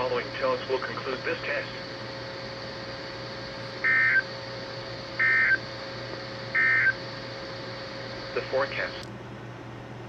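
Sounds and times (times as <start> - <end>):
radio hum and hiss: 0.0 - 9.2
digital data tone bursts: 3.8 - 4.2, 5.2 - 5.6, 6.6 - 7.0.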